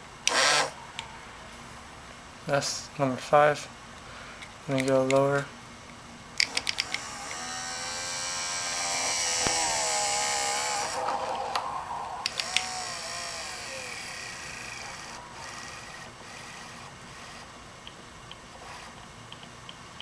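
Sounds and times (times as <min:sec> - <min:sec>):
small electric motor whirring: 0:00.3 - 0:00.8, 0:06.4 - 0:11.4, 0:12.2 - 0:17.6, 0:18.6 - 0:19.0.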